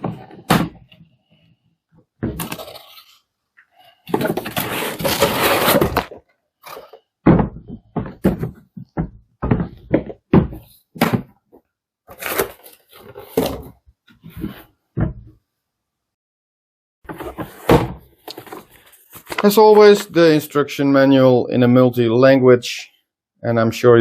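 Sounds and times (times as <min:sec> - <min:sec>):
knocks and thumps of objects: 0:00.0 - 0:01.2, 0:02.0 - 0:02.8, 0:04.0 - 0:11.7, 0:13.0 - 0:15.4, 0:17.0 - 0:19.4
cardboard packaging rustling: 0:02.3 - 0:03.2, 0:04.0 - 0:07.0, 0:12.1 - 0:13.8, 0:17.1 - 0:20.1.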